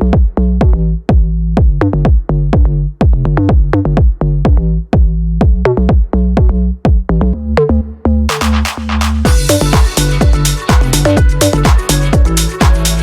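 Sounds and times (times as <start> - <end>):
electronic dance music: 7.8 - 13.0.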